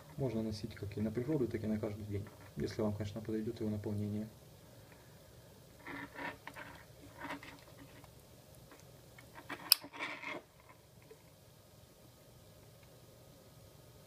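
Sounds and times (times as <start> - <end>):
rustling scrapes: 5.8 - 8.1.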